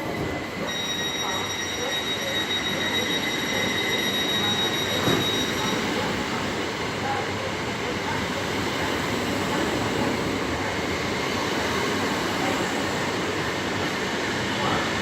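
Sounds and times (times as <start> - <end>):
high wheel squeal: 0.6 - 6.1.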